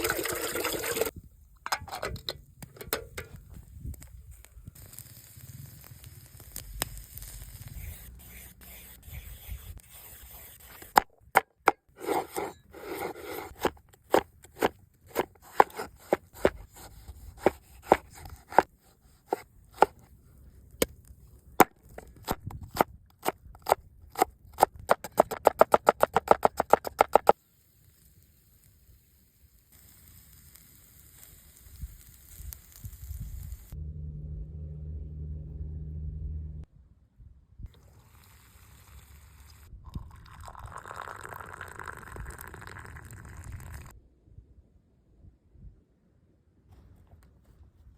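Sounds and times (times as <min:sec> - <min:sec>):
faint hiss: 0:03.4 - 0:10.9, 0:27.4 - 0:33.8, 0:37.7 - 0:39.8.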